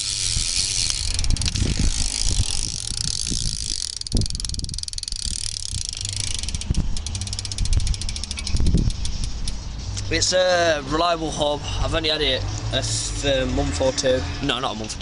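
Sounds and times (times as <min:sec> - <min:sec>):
bicycle hub freewheel ticking: 0:00.0 - 0:10.3.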